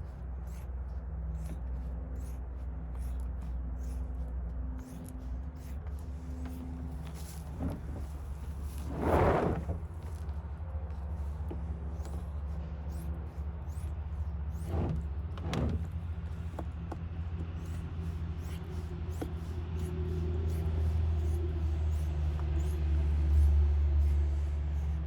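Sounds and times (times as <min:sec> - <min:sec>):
steady low hum: 0:00.0 - 0:25.0
plastic liner scraping and crunching: 0:07.1 - 0:10.2.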